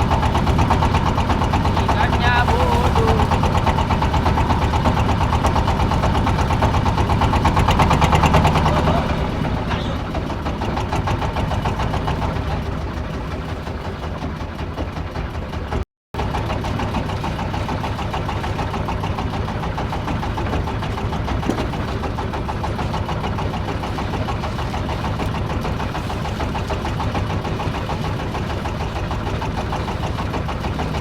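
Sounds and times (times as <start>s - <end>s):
boat engine running: 0.0s - 31.0s.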